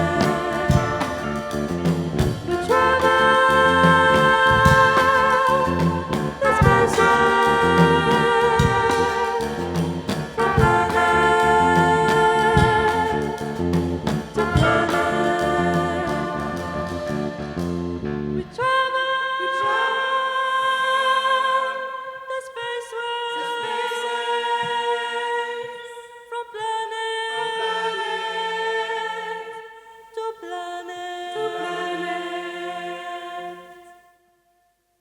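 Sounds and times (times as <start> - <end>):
band chord with brass: 0.0 - 17.8
vocal ensemble singing chords: 0.0 - 20.2, 21.0 - 34.2.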